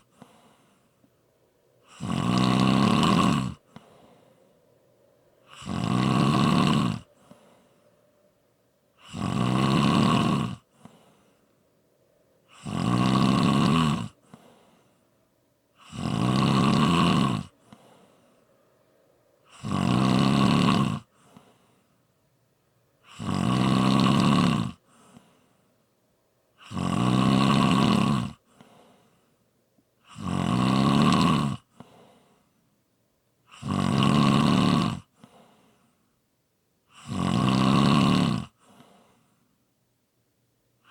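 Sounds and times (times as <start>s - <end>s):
faint breath out: 0.0s - 2.1s, 3.6s - 5.6s, 7.0s - 9.1s, 10.6s - 12.6s, 14.2s - 15.9s, 17.5s - 19.6s, 21.1s - 22.2s, 24.8s - 26.0s, 28.4s - 29.5s, 31.7s - 32.8s, 35.1s - 36.2s, 38.6s - 39.6s
person snoring: 1.8s - 4.3s, 5.4s - 7.8s, 9.0s - 11.3s, 12.4s - 14.8s, 15.8s - 18.3s, 19.4s - 21.7s, 23.0s - 25.3s, 26.6s - 28.8s, 30.0s - 32.0s, 33.5s - 35.4s, 36.9s - 38.6s.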